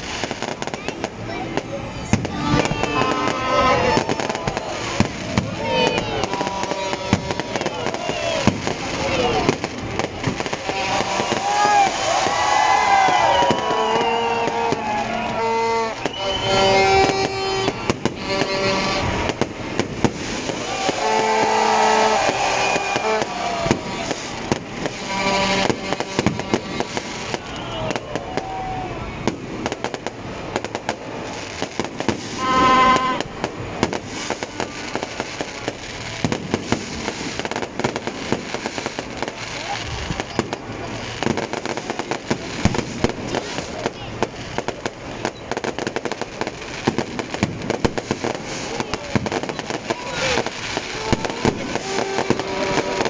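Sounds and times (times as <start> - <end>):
firework bangs and crackling: 0.0 - 53.0
firework whistling: 0.0 - 53.0.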